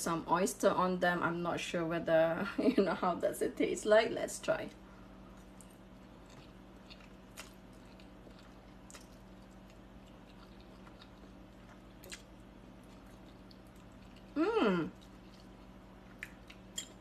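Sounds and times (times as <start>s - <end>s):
low steady hum: 0.0s - 17.0s
person chewing: 5.2s - 17.0s.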